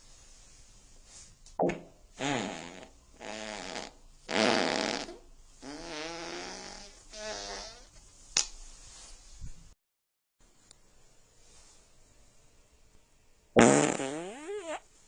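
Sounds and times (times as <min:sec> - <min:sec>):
sputtering farts: 0:01.6 - 0:07.9, 0:13.6 - 0:14.9.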